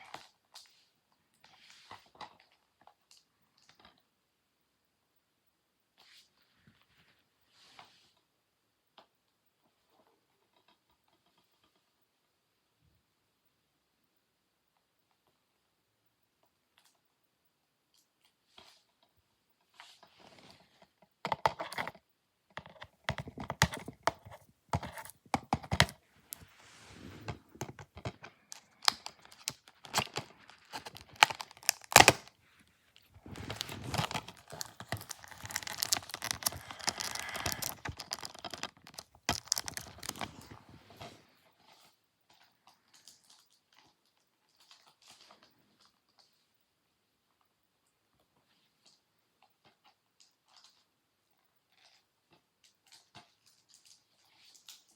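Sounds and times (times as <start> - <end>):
plastic shrink wrap crinkling: 22.6 - 41.1.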